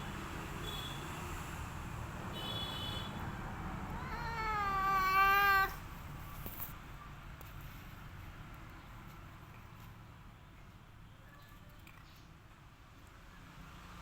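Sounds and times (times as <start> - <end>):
cat meowing: 3.9 - 5.8.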